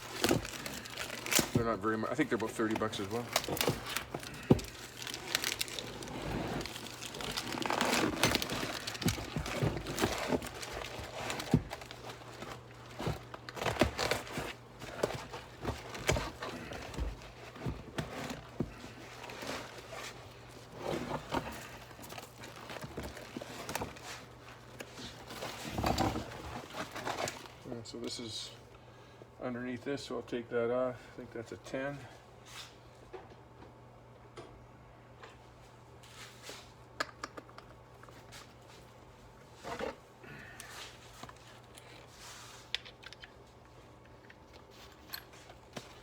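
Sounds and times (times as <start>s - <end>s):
vinyl seat cover crinkling: 0.0s - 27.5s.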